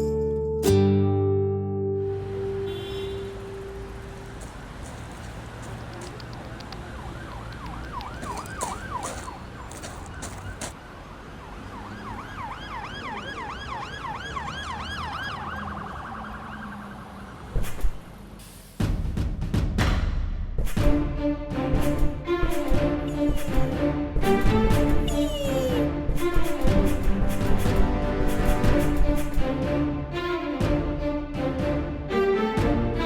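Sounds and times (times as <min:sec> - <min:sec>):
siren yelping: 0:06.8 - 0:10.7, 0:11.7 - 0:17.5, 0:25.0 - 0:25.8.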